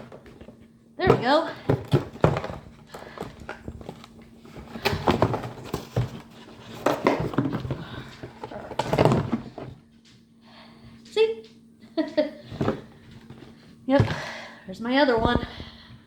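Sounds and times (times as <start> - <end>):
cardboard and plastic rustling: 0.0 - 10.1, 12.4 - 14.3
low steady hum: 0.0 - 16.0.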